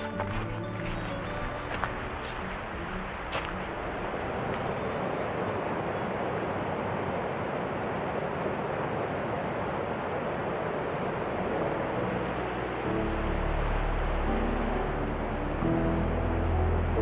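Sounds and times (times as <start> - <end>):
waterfall rushing: 8.3 - 15.3.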